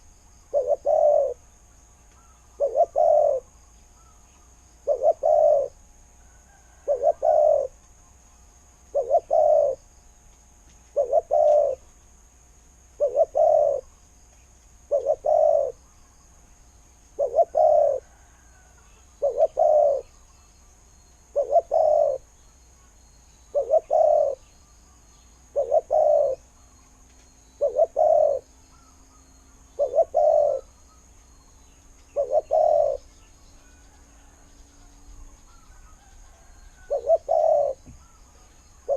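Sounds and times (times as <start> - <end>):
dove cooing: 0.0 - 1.4, 2.2 - 4.2, 4.8 - 5.7, 6.5 - 7.8, 8.9 - 9.8, 10.9 - 11.8, 13.0 - 13.9, 14.9 - 15.8, 17.2 - 18.6, 19.2 - 20.1, 21.3 - 22.3, 23.5 - 24.5, 25.5 - 26.4, 27.6 - 28.9, 29.7 - 30.7, 32.1 - 34.4, 35.5 - 38.2.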